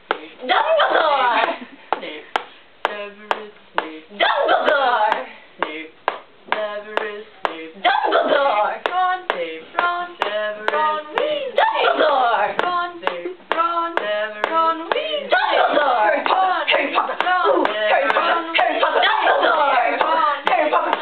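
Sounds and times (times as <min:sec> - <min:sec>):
voices singing a chant: 0:00.1 - 0:21.0
hand claps: 0:01.4 - 0:03.9, 0:05.1 - 0:07.6, 0:08.8 - 0:11.3, 0:12.6 - 0:15.1, 0:16.2 - 0:18.4, 0:20.0 - 0:21.0.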